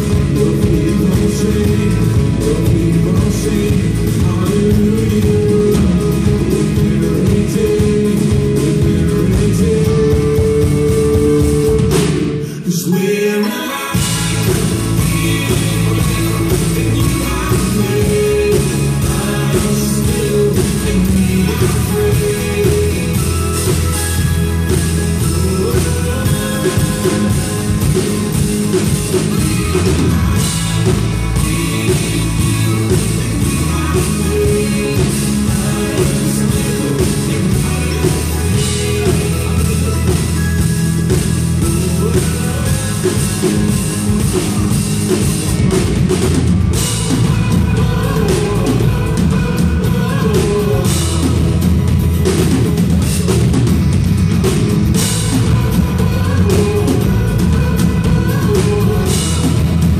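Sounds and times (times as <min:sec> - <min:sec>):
faint singing: 0:00.0 - 0:53.6, 0:54.4 - 0:59.9
rock band playing: 0:00.0 - 0:59.9.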